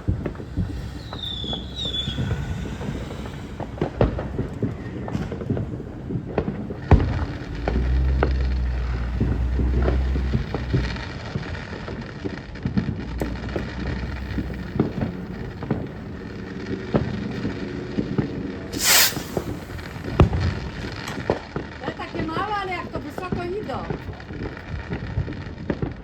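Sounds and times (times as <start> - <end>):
firework rocket launching hiss: 0.0 - 12.4, 13.0 - 21.7
low rumble: 0.0 - 21.2
fireworks popping and crackling: 0.0 - 26.0.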